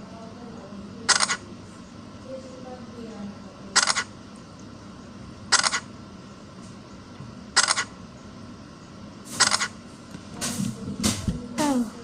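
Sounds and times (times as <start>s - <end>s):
camera shutter clicks: 3.8s - 4.1s, 5.5s - 5.8s, 7.6s - 7.9s, 9.4s - 9.7s.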